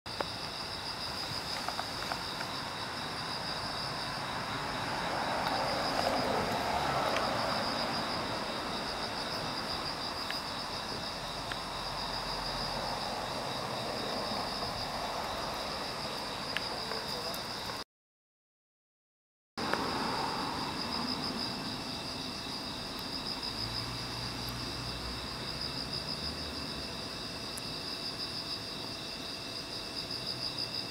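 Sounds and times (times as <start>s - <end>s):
crickets trilling: 0.1s - 17.8s, 19.6s - 30.9s.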